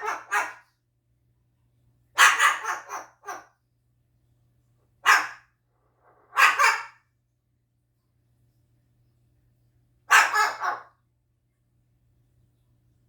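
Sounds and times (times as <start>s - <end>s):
cockatoo imitating dog bark: 0.0s - 0.6s, 2.2s - 3.5s, 5.0s - 5.4s, 6.3s - 7.0s, 10.1s - 10.9s.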